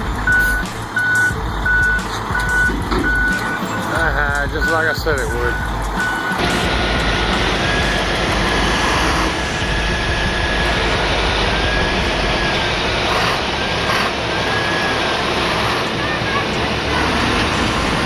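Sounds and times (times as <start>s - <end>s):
heavy diesel engines running: 0.0s - 18.0s
thin high whine: 3.2s - 18.0s.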